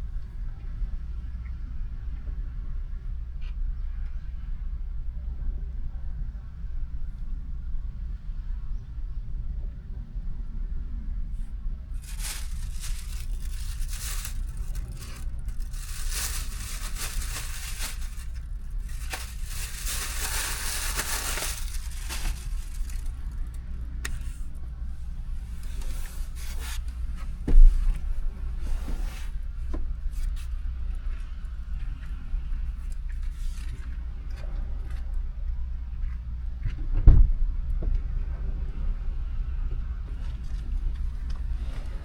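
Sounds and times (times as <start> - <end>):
steady low hum: 11.2 - 28.6
plastic packaging rustling: 12.0 - 24.4, 25.5 - 27.0.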